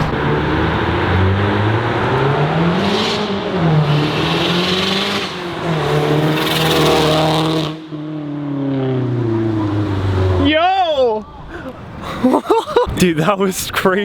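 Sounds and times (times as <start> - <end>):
car engine accelerating: 0.0 - 10.8.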